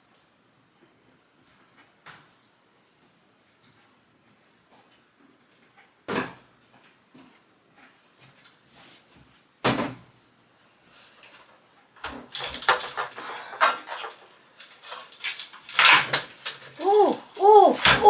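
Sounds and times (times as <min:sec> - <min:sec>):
clattering and rustling: 0:11.1 - 0:16.8
objects being handled and set down: 0:11.2 - 0:16.8.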